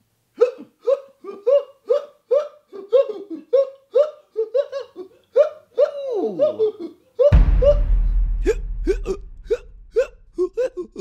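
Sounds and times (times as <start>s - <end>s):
high hiccups: 0.4s - 6.0s, 9.0s - 11.0s
deep boom: 7.3s - 10.6s.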